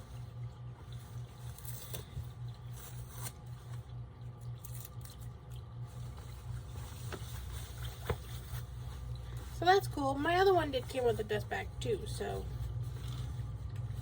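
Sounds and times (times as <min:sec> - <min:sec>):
steady low hum: 0:00.0 - 0:14.0
fabric bag rustling: 0:06.2 - 0:10.1.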